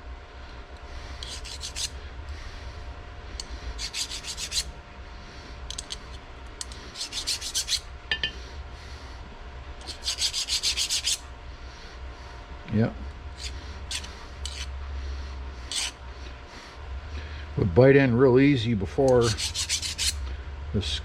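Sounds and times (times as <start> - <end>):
hand file scraping steel: 1.2 - 2.0, 3.4 - 4.7, 6.6 - 7.9, 9.8 - 11.2, 13.4 - 14.7, 15.7 - 16.0, 19.0 - 20.2.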